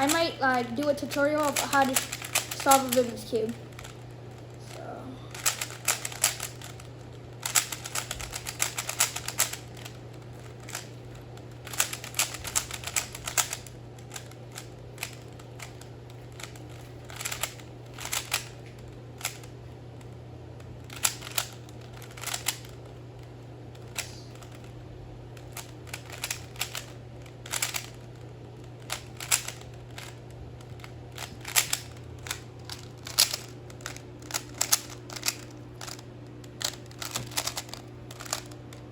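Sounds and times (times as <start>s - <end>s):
puzzle cube clicking: 0.0s - 4.0s, 5.3s - 6.8s, 7.4s - 10.9s, 11.6s - 18.6s, 20.9s - 22.8s, 25.4s - 28.0s, 28.8s - 30.2s, 30.8s - 38.6s
steady low hum: 0.0s - 38.9s.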